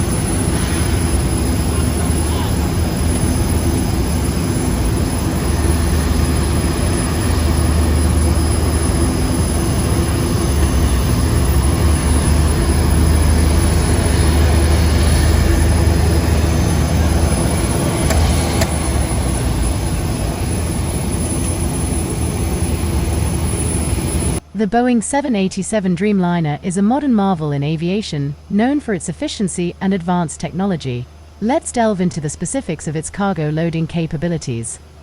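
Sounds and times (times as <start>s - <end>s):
jet engines roaring: 0.0s - 24.4s.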